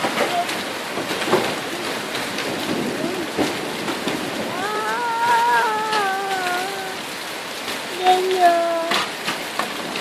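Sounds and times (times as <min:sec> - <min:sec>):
heavy rain pouring: 0:00.0 - 0:10.0.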